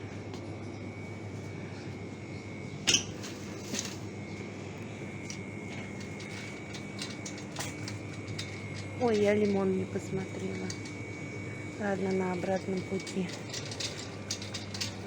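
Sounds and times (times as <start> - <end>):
goods clinking and clattering: 11.8 - 15.0.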